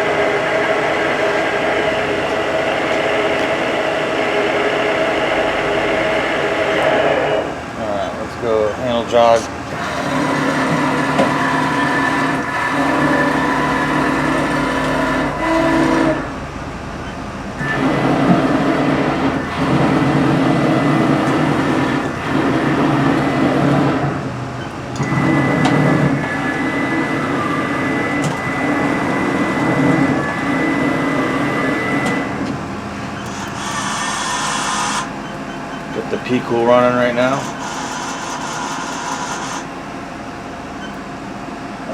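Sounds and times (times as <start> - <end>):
machine axis drives whining: 0.0 - 41.2.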